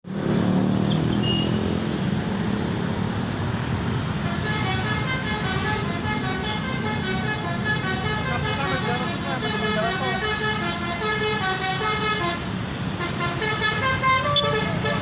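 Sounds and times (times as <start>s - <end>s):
bus engine running: 0.0s - 15.0s
traffic: 0.0s - 15.0s
multi-tone bus horn tune: 4.0s - 15.0s.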